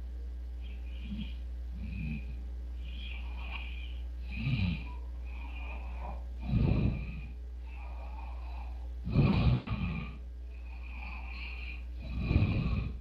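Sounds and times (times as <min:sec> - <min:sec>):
steady low hum: 0:00.0 - 0:13.0
man snoring: 0:01.0 - 0:13.0.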